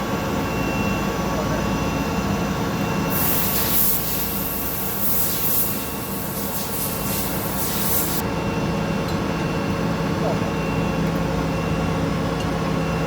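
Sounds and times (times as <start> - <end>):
machinery humming: 0.0 - 13.0
loud hiss: 3.1 - 8.2.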